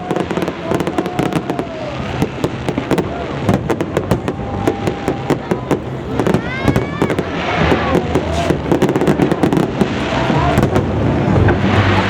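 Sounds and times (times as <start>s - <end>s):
fireworks cracks and bangs: 0.0s - 12.0s.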